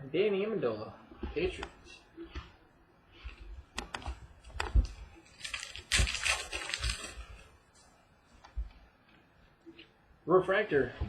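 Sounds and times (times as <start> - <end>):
foil pack crinkling: 5.2 - 7.5.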